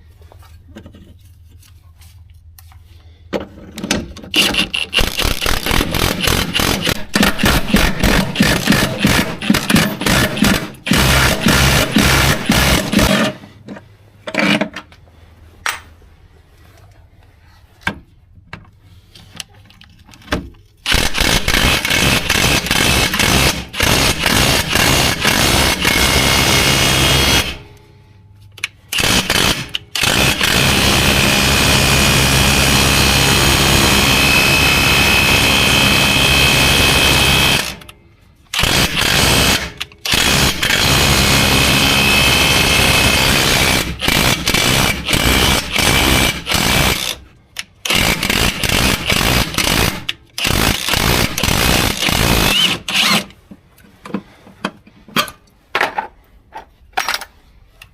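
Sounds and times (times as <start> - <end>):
impact wrench hammering: 4.4 - 13.3, 20.9 - 27.7, 38.6 - 47.2.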